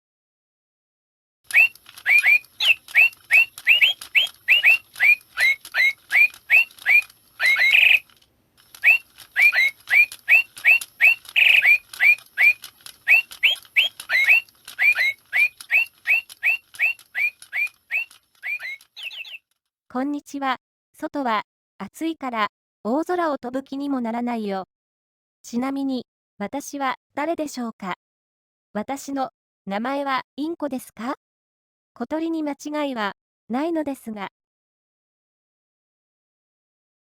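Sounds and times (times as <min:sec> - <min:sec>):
toy bird chirping electronically: 0:01.5 - 0:19.5.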